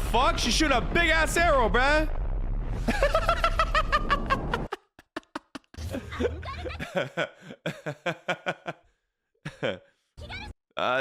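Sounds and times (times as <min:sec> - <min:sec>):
low rumble: 0:00.0 - 0:04.7.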